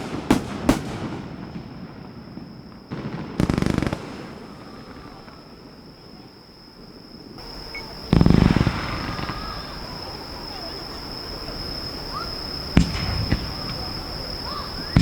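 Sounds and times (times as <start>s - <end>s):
firework boom: 0.0s - 5.9s, 7.4s - 10.6s, 12.7s - 15.0s
faint voices: 3.6s - 15.0s.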